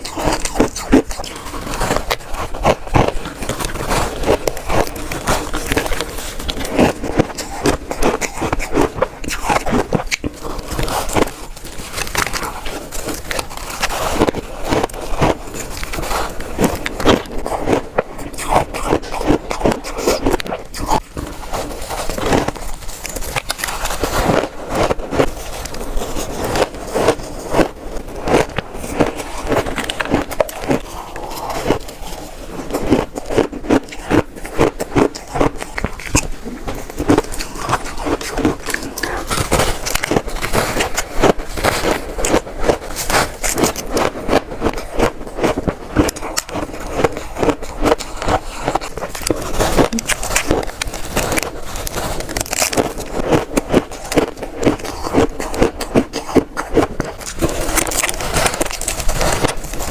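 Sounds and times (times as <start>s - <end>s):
ice being crunched: 0.0s - 59.9s.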